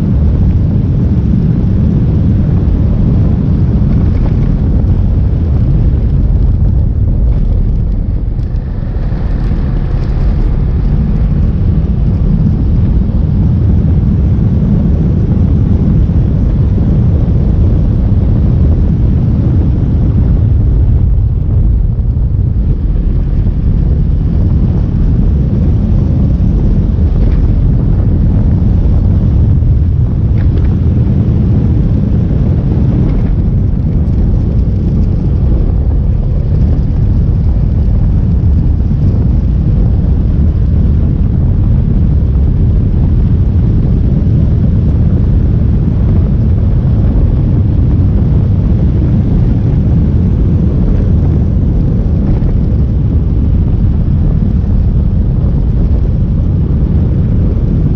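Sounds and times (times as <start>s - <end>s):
motorcycle engine and road noise: 0.0s - 57.9s
wind buffeting on microphone: 0.0s - 57.9s.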